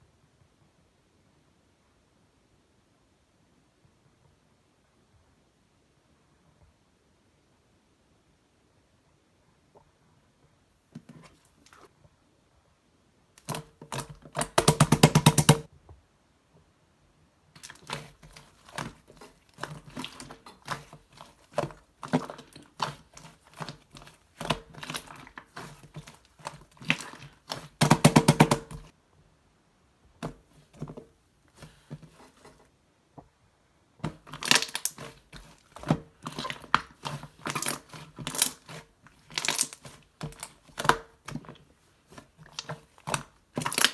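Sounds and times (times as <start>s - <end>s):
dense small clicks and crinkling: 34.0s - 43.9s.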